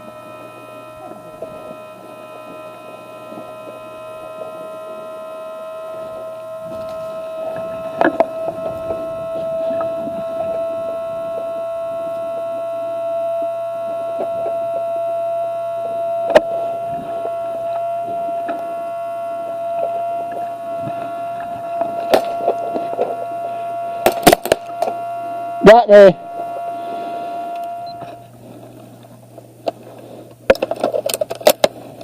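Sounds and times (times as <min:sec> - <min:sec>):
small fan whining: 0:00.0 - 0:32.0.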